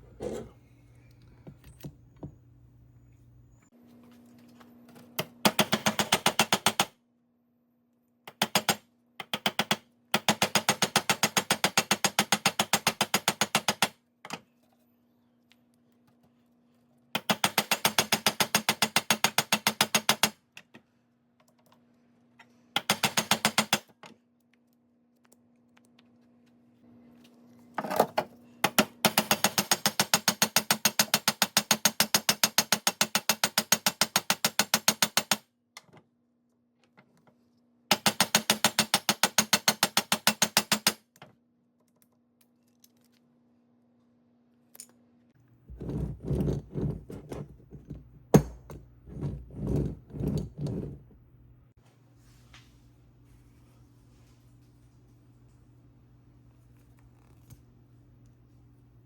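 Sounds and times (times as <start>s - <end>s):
faint steady hum: 0.0s - 5.4s, 41.1s - 59.0s.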